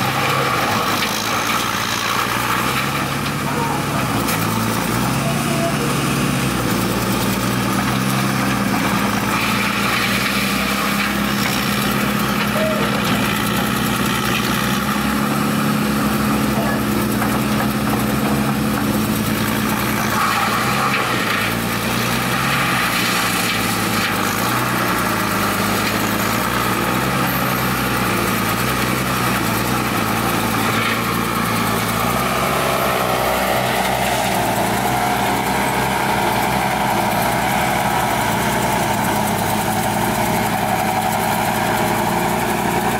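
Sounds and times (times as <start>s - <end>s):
excavator engine running: 0.0s - 42.9s
wood grinder noise: 0.0s - 42.9s.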